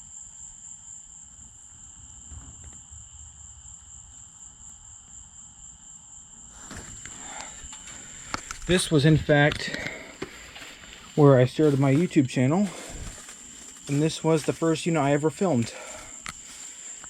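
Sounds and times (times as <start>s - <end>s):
insects calling: 0.0s - 17.0s
rustling handling noise: 6.6s - 17.0s.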